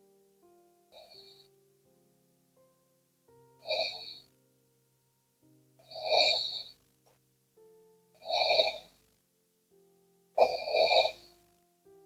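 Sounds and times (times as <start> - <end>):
soft background music: 0.0 - 12.0
person snoring: 1.0 - 1.4, 3.6 - 4.2, 5.8 - 6.8, 8.2 - 8.9, 10.4 - 11.4.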